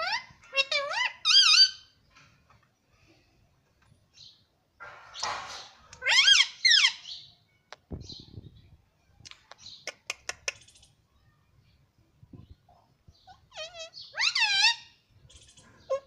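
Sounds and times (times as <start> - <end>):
parrot squawking: 0.0 - 1.9, 6.0 - 7.1, 13.3 - 15.0
sharp clicks: 9.2 - 10.8.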